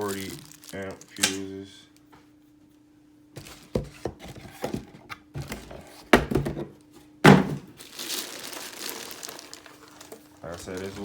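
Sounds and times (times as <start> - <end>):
items set down with thunks: 3.4 - 7.7.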